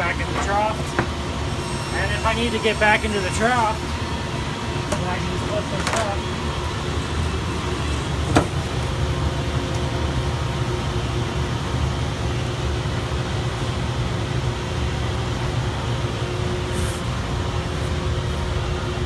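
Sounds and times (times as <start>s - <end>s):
workshop machinery humming: 0.0s - 19.0s.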